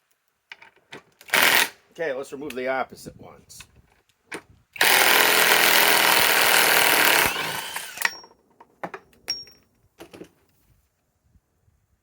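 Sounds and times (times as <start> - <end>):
sharp metallic clinks: 9.2 - 9.7.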